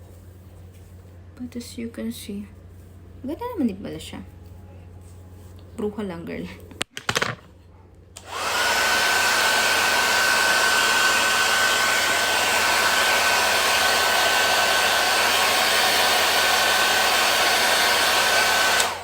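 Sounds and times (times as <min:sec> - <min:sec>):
hair dryer running: 0:08.2 - 0:19.0.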